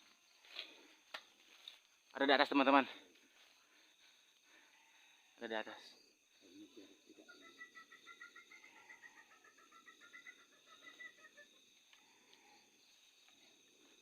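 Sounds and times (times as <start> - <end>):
insects chirring: 0.0 - 14.0
night animal pulsing trill: 6.0 - 13.5.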